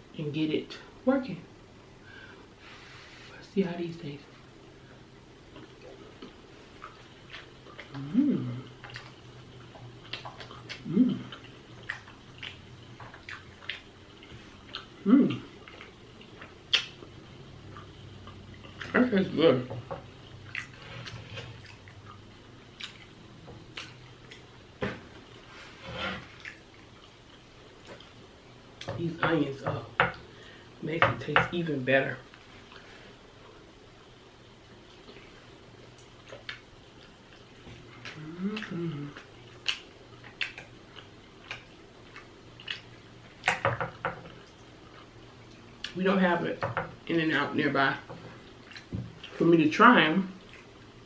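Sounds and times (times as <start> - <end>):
mouth chewing smacks and clicks: 8.8 - 19.0, 23.7 - 24.5, 34.9 - 43.6, 48.6 - 49.4, 50.4 - 51.0.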